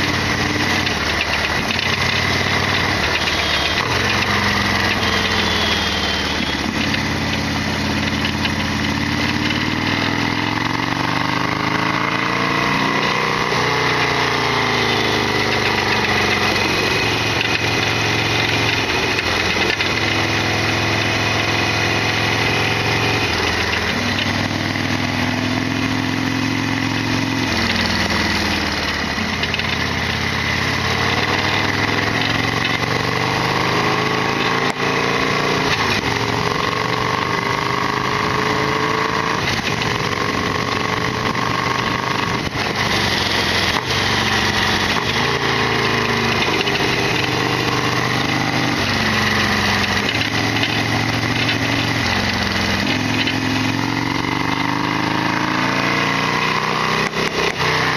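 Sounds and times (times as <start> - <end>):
motorcycle engine shifting gears: 0.0 - 57.9.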